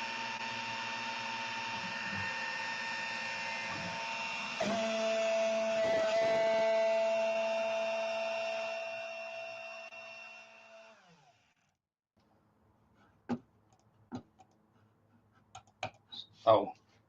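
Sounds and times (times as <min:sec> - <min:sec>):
router spindle whine spinning down: 0:00.0 - 0:11.5.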